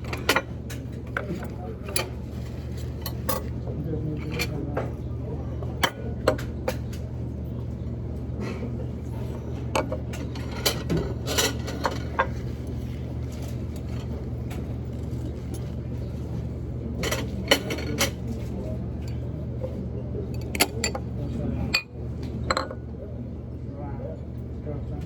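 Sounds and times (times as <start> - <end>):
cutlery and dishes clinking: 0.0 - 3.5, 9.7 - 15.8, 17.0 - 19.3, 20.4 - 21.1.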